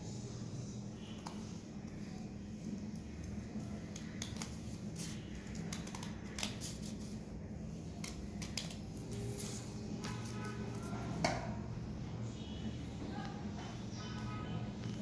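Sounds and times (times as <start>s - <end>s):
scissors cutting paper: 2.6s - 7.2s, 7.9s - 10.9s.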